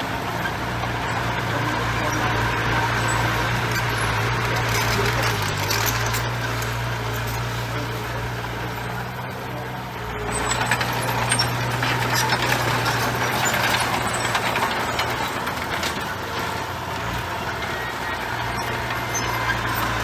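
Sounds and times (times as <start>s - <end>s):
heavy diesel machinery droning: 0.0s - 20.0s
rattle of small knocks: 0.3s - 7.6s, 10.3s - 20.0s.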